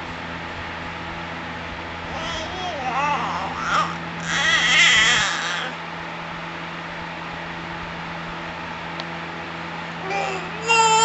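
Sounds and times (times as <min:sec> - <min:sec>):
steady low hum: 0:00.0 - 0:11.0
baby squealing scream: 0:02.6 - 0:05.8.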